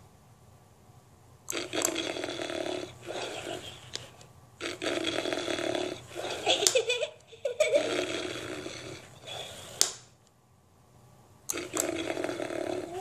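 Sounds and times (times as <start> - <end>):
toy bear snoring sound: 1.5 - 4.0, 4.6 - 6.7, 7.5 - 9.8, 11.5 - 13.0
sharp click: 9.8 - 10.1.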